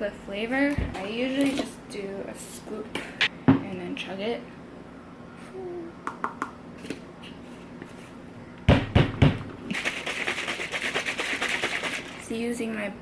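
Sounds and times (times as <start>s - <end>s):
shaker bottle rattling: 9.7s - 12.2s.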